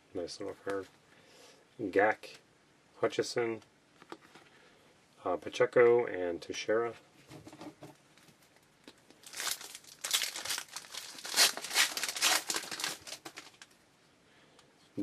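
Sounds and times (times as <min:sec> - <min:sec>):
wrapper crinkling torn open: 0:09.2 - 0:13.7.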